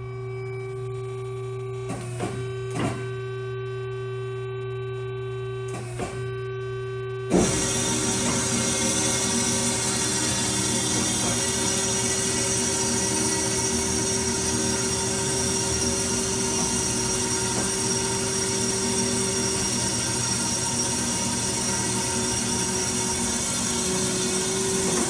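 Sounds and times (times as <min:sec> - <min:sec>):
high whine: 0:00.0 - 0:25.0
band saw running: 0:07.3 - 0:25.0.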